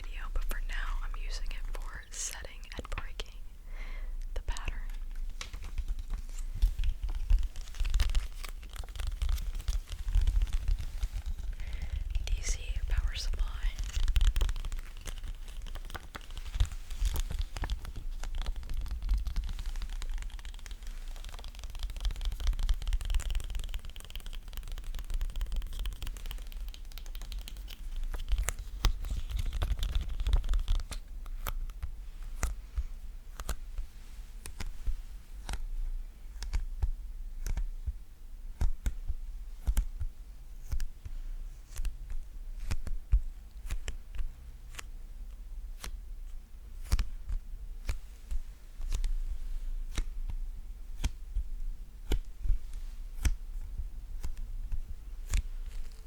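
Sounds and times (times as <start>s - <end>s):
sticky crackling and peeling: 5.9s - 32.5s.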